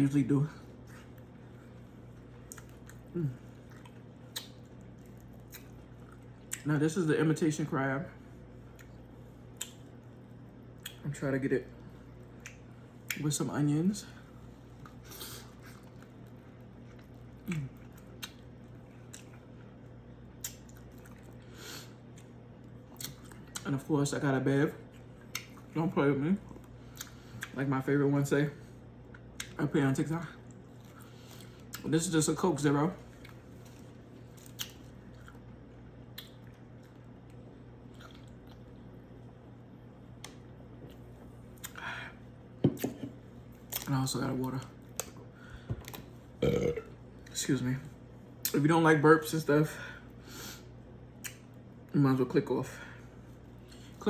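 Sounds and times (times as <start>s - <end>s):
person chewing soft food: 0.6s - 6.6s, 14.2s - 23.7s, 26.4s - 27.6s, 33.0s - 38.8s.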